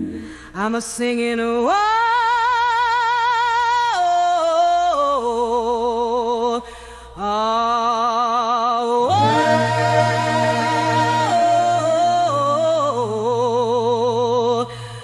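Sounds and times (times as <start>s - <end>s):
person singing wordless notes: 9.1s - 15.0s.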